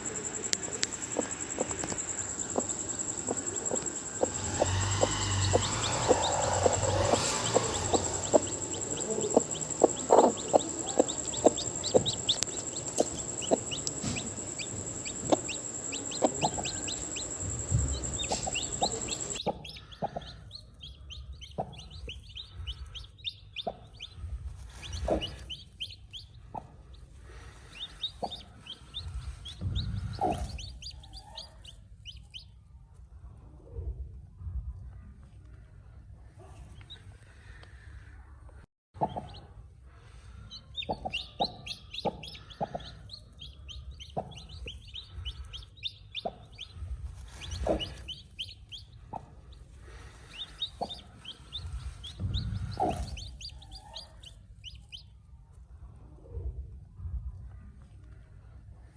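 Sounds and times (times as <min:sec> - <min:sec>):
steady high whine: 0:00.0 - 0:19.4
chickens clucking: 0:00.0 - 0:32.3, 0:39.0 - 0:39.4, 0:40.4 - 0:55.0
chicks peeping: 0:00.0 - 0:32.5, 0:39.0 - 0:39.4, 0:40.1 - 0:55.1.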